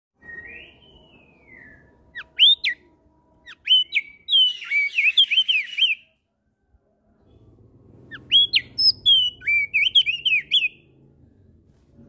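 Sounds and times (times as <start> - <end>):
bird singing whistled notes: 0.2 - 6.2, 8.1 - 10.8.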